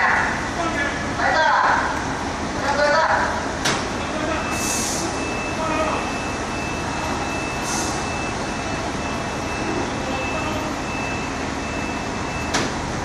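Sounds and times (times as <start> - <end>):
heavy diesel machinery running: 0.0 - 13.0
high-pitched warning tone: 4.2 - 12.5.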